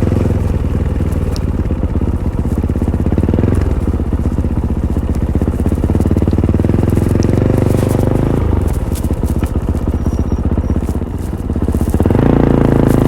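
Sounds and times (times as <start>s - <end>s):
motorcycle engine thumping: 0.0s - 13.0s.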